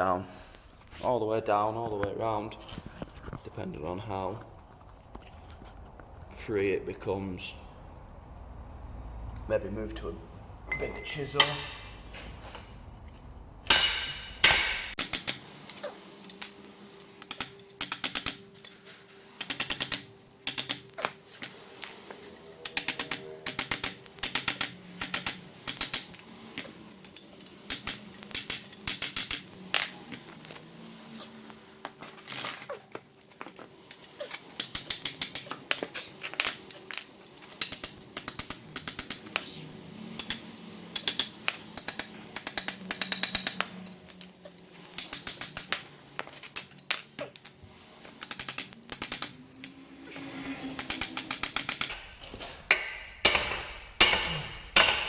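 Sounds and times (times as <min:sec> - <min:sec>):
hammer striking steel chisel: 0:10.7 - 0:12.0, 0:13.7 - 0:15.4, 0:40.2 - 0:43.7, 0:50.8 - 0:55.0.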